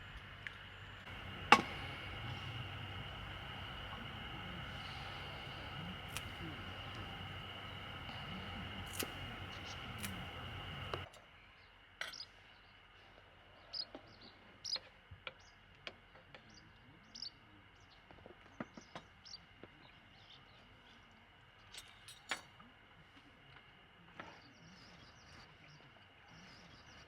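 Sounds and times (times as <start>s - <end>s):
faint bird chirps: 0.7s - 15.6s, 16.4s - 22.3s
loud steady hiss: 1.0s - 11.1s.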